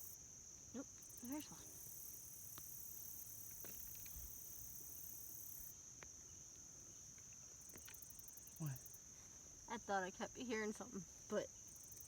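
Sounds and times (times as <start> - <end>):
insects chirring: 0.0 - 12.0
faint ticks: 2.4 - 8.9.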